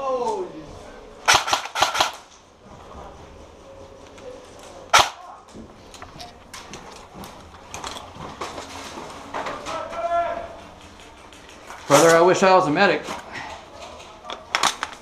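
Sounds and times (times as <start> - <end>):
airsoft gun shot crack: 4.9 - 5.2.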